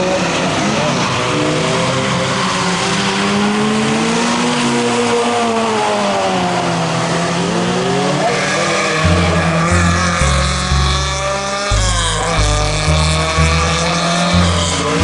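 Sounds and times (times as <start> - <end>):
car engine revving: 0.0 - 15.0
road and tyre noise: 0.0 - 15.0.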